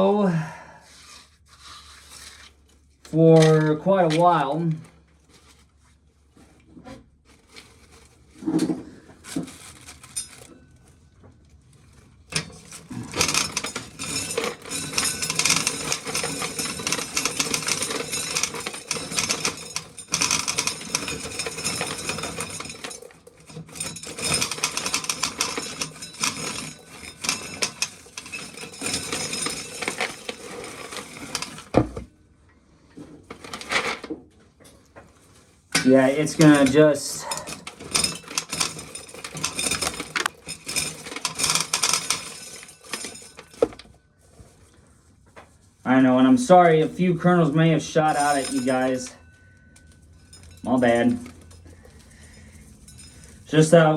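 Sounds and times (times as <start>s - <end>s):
corn sheller metallic rattling: 3.1s - 4.9s, 11.9s - 31.9s, 35.7s - 44.0s, 45.9s - 53.9s.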